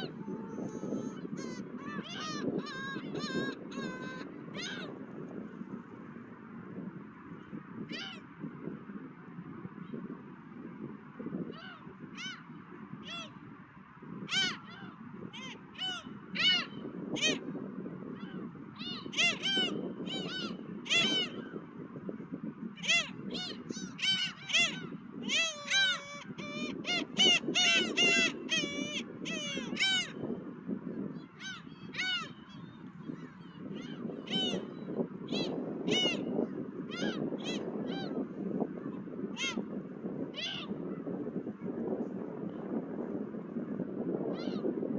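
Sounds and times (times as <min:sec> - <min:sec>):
seagulls calling: 0:00.0 - 0:05.0, 0:13.1 - 0:13.3, 0:14.3 - 0:17.4, 0:18.2 - 0:21.6, 0:22.8 - 0:30.2, 0:31.2 - 0:38.2, 0:40.4 - 0:40.8
low rumble of wind: 0:00.0 - 0:44.9.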